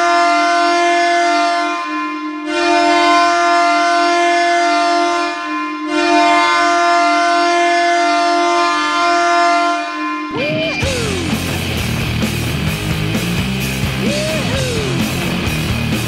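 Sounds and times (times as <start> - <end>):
goal horn blasts: 0.0 - 11.4.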